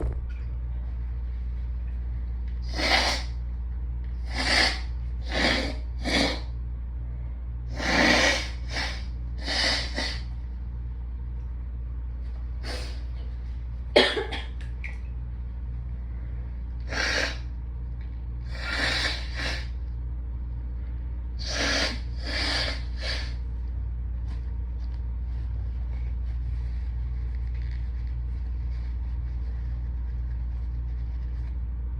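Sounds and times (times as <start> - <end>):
air conditioner humming: 0.0 - 31.9
person blowing nose: 2.7 - 3.4, 4.3 - 6.5, 7.8 - 10.3, 12.6 - 13.0, 16.9 - 17.4, 18.5 - 19.8, 21.4 - 23.4.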